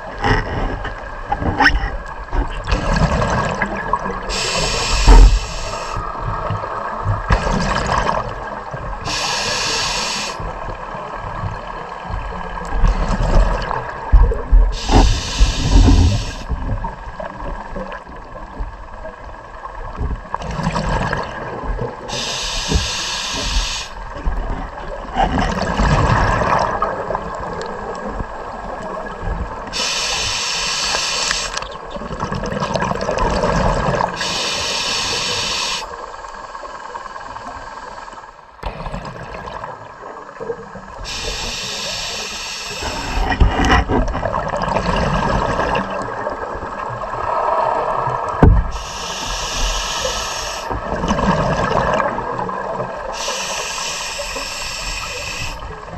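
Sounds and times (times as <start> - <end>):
regulator hissing inhalations: 4.3 - 6.0, 9.0 - 10.4, 14.8 - 16.5, 22.1 - 24.0, 29.8 - 31.6, 34.2 - 35.9, 41.1 - 43.4, 48.7 - 50.8, 53.1 - 55.7
exhaled bubbles: 20.4 - 28.0, 38.6 - 55.9.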